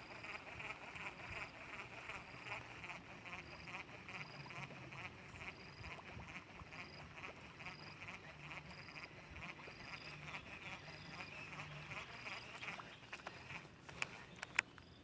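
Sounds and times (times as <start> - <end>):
frogs calling: 0.0 - 15.0.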